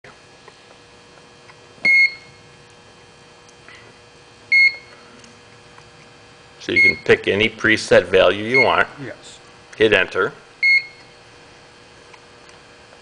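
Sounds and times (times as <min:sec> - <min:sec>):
faint steady hum: 0:00.1 - 0:13.0
short electronic beeps: 0:01.8 - 0:02.3.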